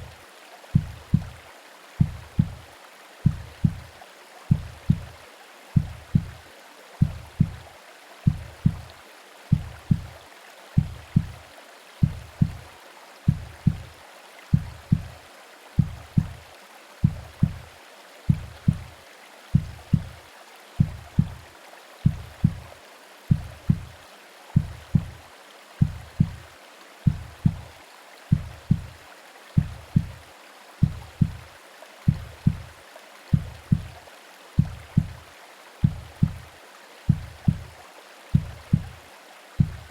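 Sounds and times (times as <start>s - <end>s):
muffled heartbeat thumps: 0.0s - 1.4s, 2.0s - 5.2s, 5.8s - 6.4s, 7.0s - 8.9s, 9.5s - 10.2s, 10.8s - 11.4s, 12.0s - 12.7s, 13.3s - 15.2s, 15.8s - 17.7s, 18.3s - 18.9s, 19.5s - 20.2s, 20.8s - 24.0s, 24.6s - 25.2s, 25.8s - 29.0s, 29.6s - 30.2s, 30.8s - 31.5s, 32.1s - 34.0s, 34.6s - 35.2s, 35.8s - 36.5s, 37.1s - 39.0s, 39.6s - 39.9s
white-noise hiss: 0.0s - 39.9s.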